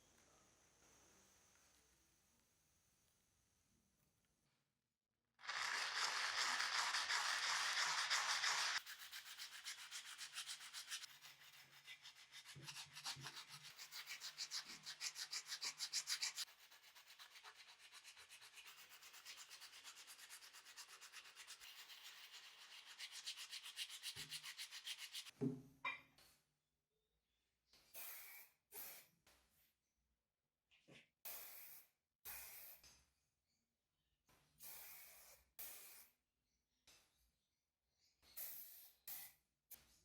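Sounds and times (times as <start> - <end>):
hand sanding metal: 5.5 - 25.3.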